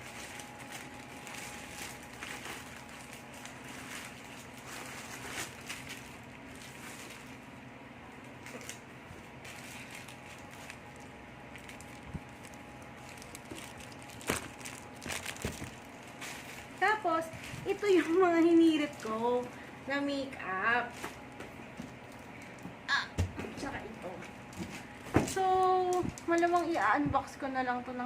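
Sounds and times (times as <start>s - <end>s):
packaging rustling: 0.0s - 7.4s, 8.2s - 19.7s
low background hum: 0.0s - 28.0s.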